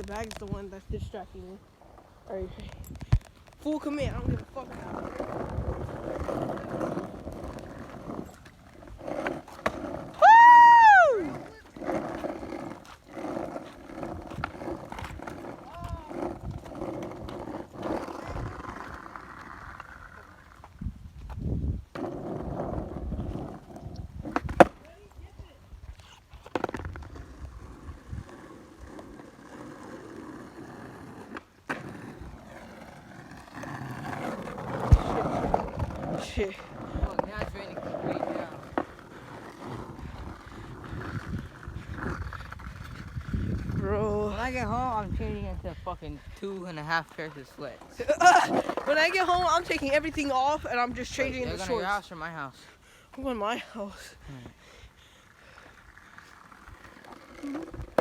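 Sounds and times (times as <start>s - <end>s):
skateboard rolling on wet pavement: 0.0s - 58.0s
person shouting woo: 10.2s - 11.4s
skateboard clacks: 23.6s - 24.9s, 26.4s - 43.2s.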